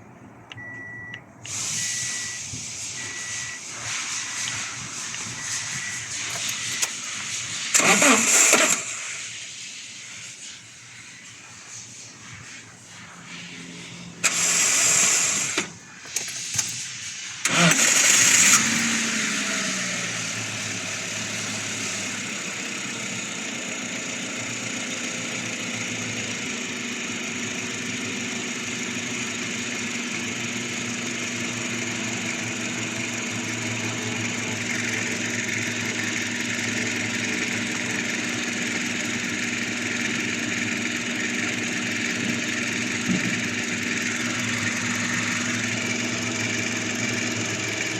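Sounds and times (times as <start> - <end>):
van engine revving and idling: 0.0 - 47.9
starter motor cranking: 4.5 - 7.1, 7.7 - 9.1, 14.2 - 21.8, 30.2 - 47.9.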